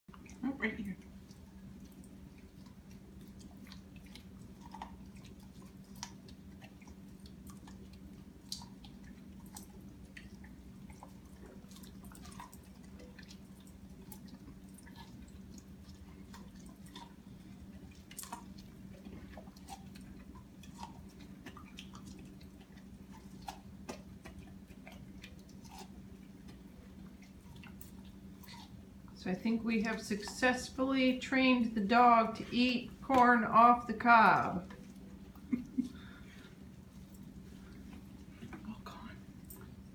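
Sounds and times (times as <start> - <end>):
dog chewing corn cob: 0.1 - 32.0, 34.4 - 38.6
steady low hum: 0.1 - 39.9.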